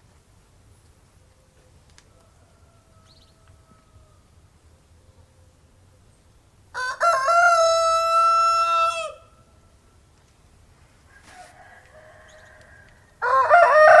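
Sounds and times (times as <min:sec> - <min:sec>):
rooster crowing: 0:02.1 - 0:04.3, 0:06.7 - 0:09.4, 0:11.1 - 0:14.0.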